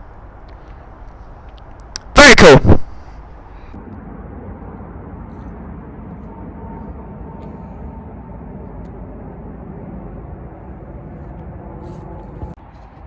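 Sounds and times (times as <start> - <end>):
low background rumble: 2.9 - 13.0
faint steady tone: 3.1 - 12.4.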